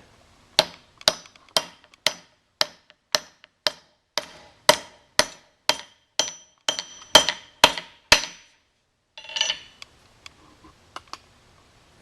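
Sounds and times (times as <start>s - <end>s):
hammer striking steel wedge: 0.6s - 8.6s.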